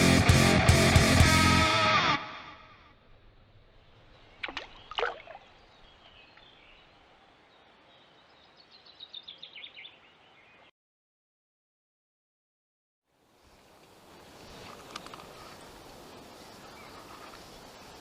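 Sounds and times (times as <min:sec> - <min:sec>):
small river: 0:02.6 - 0:10.7, 0:13.1 - 0:18.0
songbird chirps: 0:03.6 - 0:10.7, 0:13.2 - 0:18.0.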